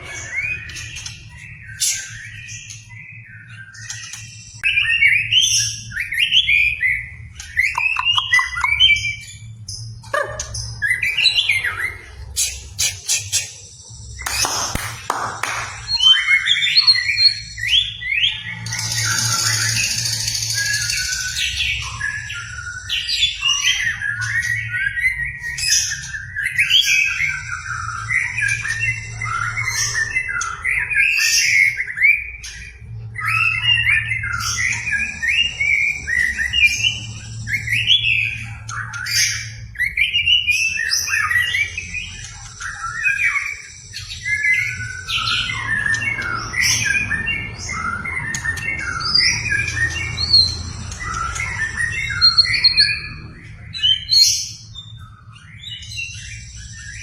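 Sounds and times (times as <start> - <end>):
bird singing: 0.0 - 57.0.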